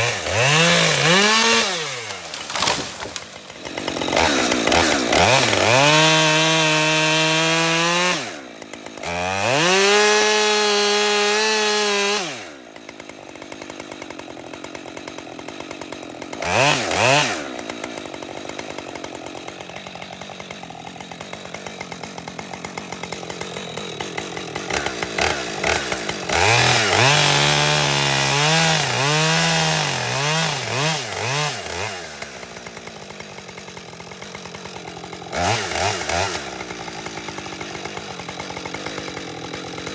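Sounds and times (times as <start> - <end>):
chainsaw revving and idling: 0.0 - 39.9.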